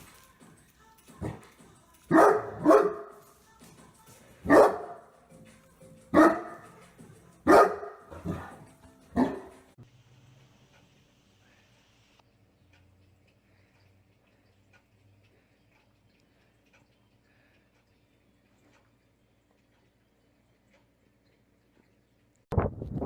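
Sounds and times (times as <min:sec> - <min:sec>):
dog barking: 0:02.1 - 0:03.2, 0:04.4 - 0:05.1, 0:06.1 - 0:06.8, 0:07.4 - 0:09.6.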